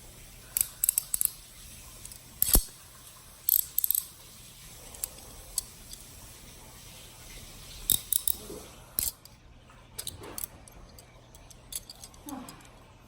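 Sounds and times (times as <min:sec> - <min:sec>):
handcuffs clicking and rattling: 0:00.6 - 0:01.4, 0:02.0 - 0:02.7, 0:03.5 - 0:04.1, 0:07.9 - 0:08.4, 0:09.0 - 0:09.4, 0:10.0 - 0:12.8.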